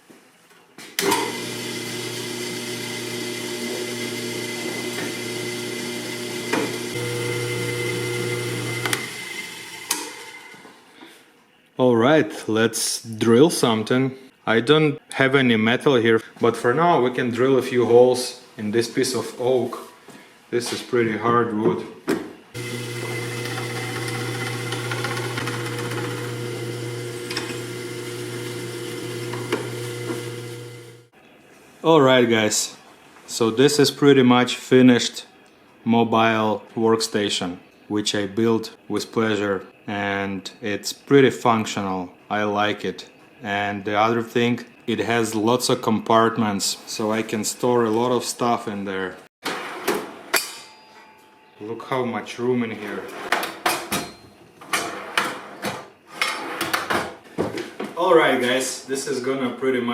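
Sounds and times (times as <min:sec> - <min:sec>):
drill press motor hum: 0:01.0 - 0:10.6, 0:22.6 - 0:31.1.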